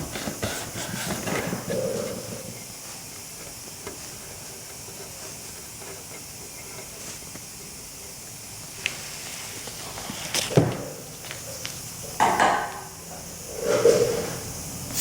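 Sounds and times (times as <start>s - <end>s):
airbrush spraying: 1.8s - 10.0s, 14.8s - 15.0s.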